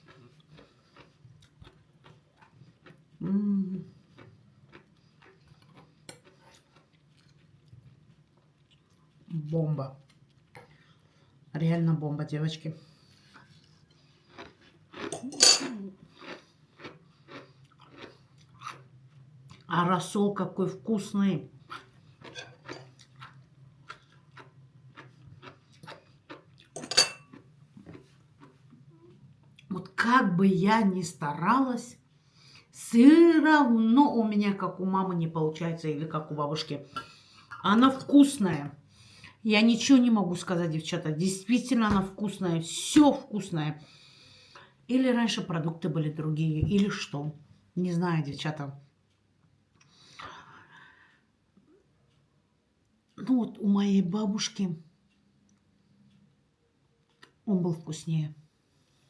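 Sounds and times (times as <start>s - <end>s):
person chewing: 0.0s - 9.3s, 13.0s - 19.7s, 21.6s - 29.7s.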